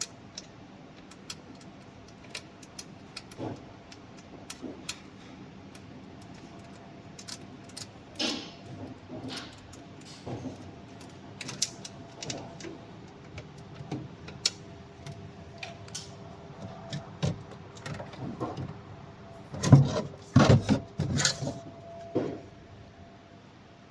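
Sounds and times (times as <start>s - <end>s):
machine parts clicking and rattling: 0.0s - 18.8s.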